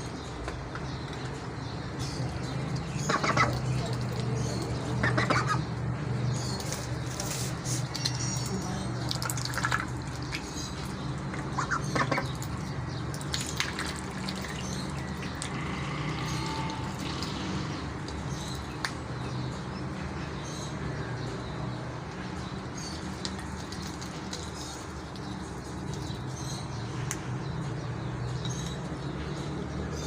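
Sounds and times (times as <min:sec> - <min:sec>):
duck bills pecking and tearing leaves: 0:06.4 - 0:17.5, 0:23.2 - 0:26.3.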